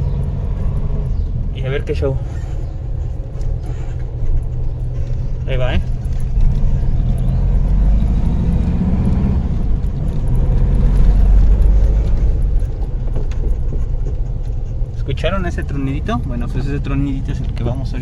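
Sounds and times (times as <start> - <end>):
brake cracking: 0.0 - 18.0
car engine running: 0.0 - 18.0.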